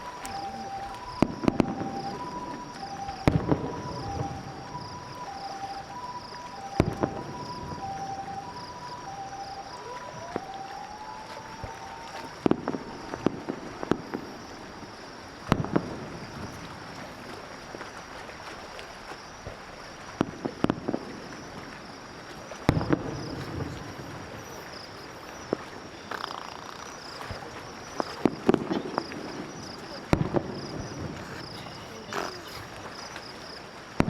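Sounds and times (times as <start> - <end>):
fireworks bangs and crackling pops: 0.0 - 5.5, 6.5 - 18.0, 18.9 - 34.0
firework rising whistle: 0.0 - 14.7, 22.7 - 31.6
steady hiss: 10.8 - 34.0.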